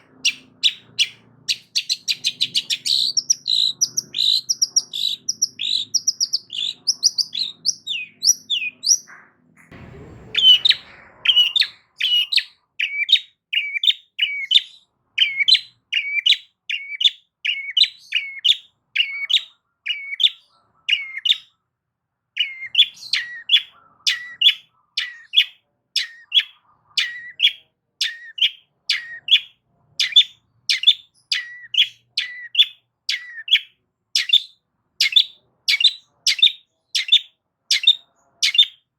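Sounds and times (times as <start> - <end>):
shrike chirping: 0.0 - 19.3.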